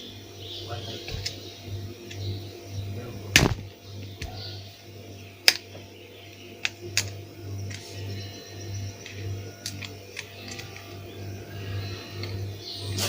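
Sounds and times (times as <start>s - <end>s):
steady low hum: 0.0s - 13.0s
small tools clicking on circuit board: 1.1s - 1.4s, 5.4s - 12.5s.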